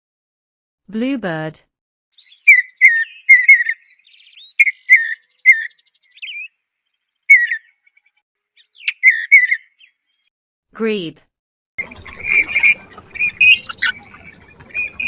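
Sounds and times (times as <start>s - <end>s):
bluebird whistled notes: 2.2s - 6.5s, 11.8s - 15.0s.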